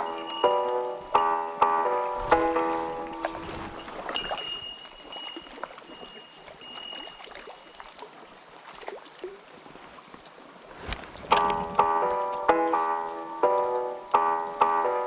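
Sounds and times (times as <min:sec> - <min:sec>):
thin high-pitched tone: 0:00.0 - 0:07.9
mountain stream running: 0:00.0 - 0:14.2.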